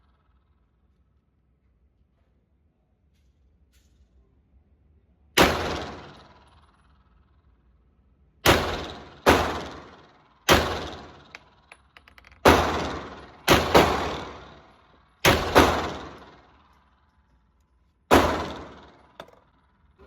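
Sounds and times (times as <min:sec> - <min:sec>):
pistol shots: 0:08.5 - 0:11.7, 0:12.4 - 0:16.6, 0:18.1 - 0:19.2.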